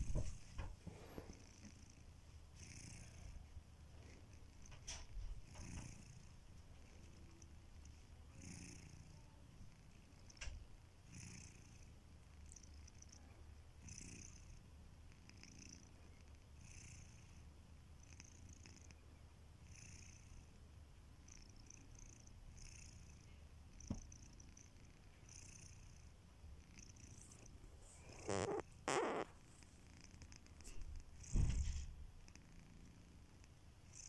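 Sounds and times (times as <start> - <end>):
cat snoring: 0.0 - 2.0, 2.6 - 3.4, 4.0 - 6.3, 8.3 - 11.9, 13.8 - 16.0, 16.6 - 17.4, 19.6 - 20.4, 21.3 - 26.0, 26.6 - 33.2.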